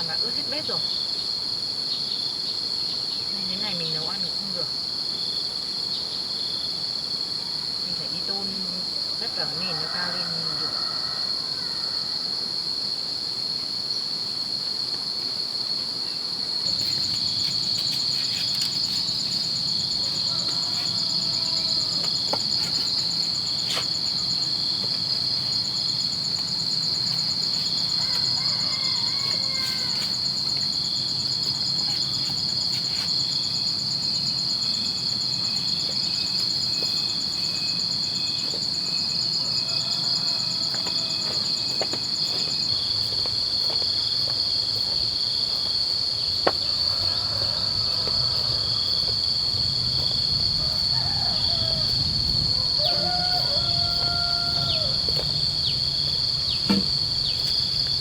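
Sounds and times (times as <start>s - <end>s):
insects chirring: 0.0s - 58.0s
fast pulsing insect trill: 16.0s - 58.0s.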